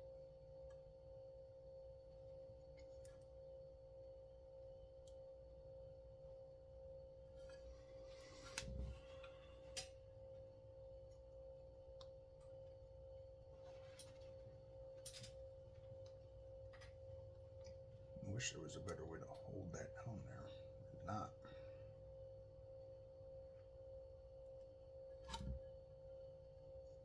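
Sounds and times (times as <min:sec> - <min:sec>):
steady electrical hum: 0:00.0 - 0:27.0
light clicks of small parts: 0:02.6 - 0:03.4, 0:15.0 - 0:17.0.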